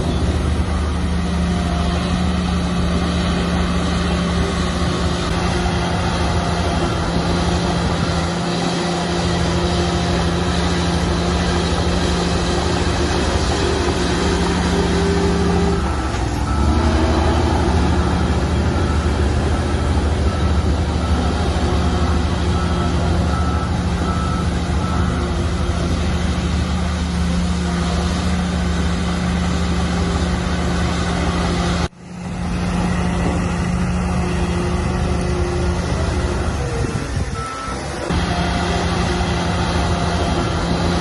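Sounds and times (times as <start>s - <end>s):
heavy diesel machinery running: 0.0s - 41.0s.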